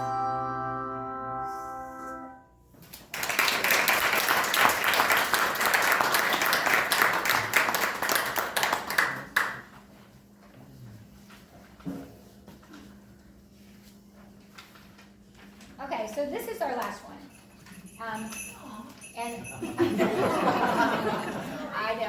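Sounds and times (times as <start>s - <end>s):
audience applause: 3.1s - 9.6s
handbell choir chord ringing: 17.3s - 21.8s.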